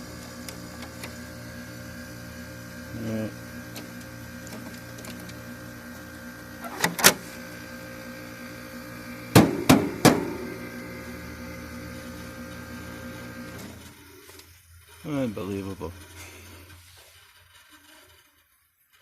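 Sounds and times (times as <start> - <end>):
air conditioner humming: 0.0 - 13.9
loud knocks: 9.4 - 10.5.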